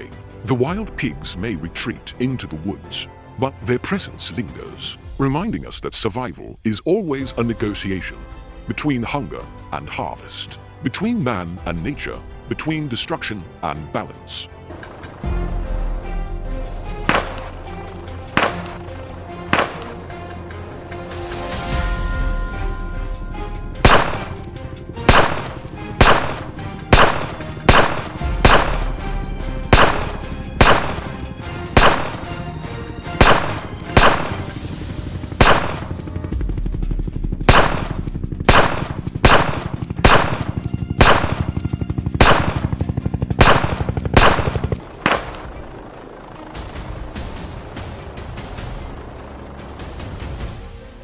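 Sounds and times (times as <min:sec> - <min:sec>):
low musical drone: 0:06.8 - 0:51.0
gunshots: 0:16.8 - 0:20.4, 0:23.8 - 0:32.5, 0:33.1 - 0:34.8, 0:35.4 - 0:36.0, 0:37.4 - 0:45.8.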